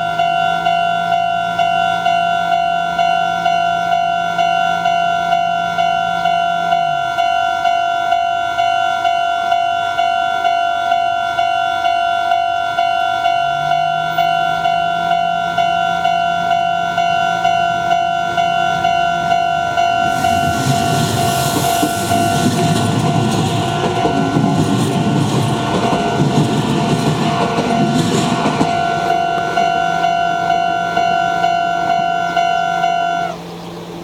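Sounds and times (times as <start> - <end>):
electric train passing: 0.0 - 34.0
level crossing bell ringing: 27.1 - 33.4.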